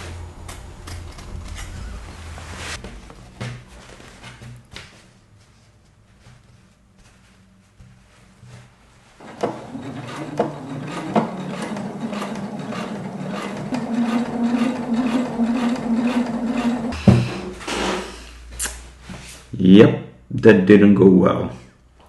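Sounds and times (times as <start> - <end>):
sewing machine stitching: 9.2 - 17.0
thump: 17.0 - 18.0.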